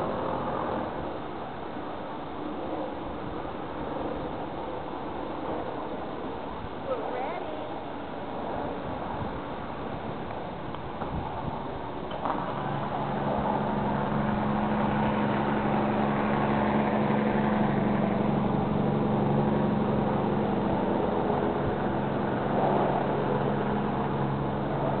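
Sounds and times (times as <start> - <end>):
low machine hum: 7.4 - 25.0.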